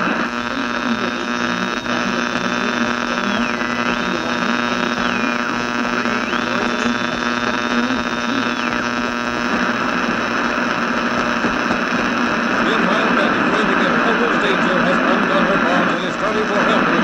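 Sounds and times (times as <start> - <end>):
mains hum and buzz: 0.0 - 17.0.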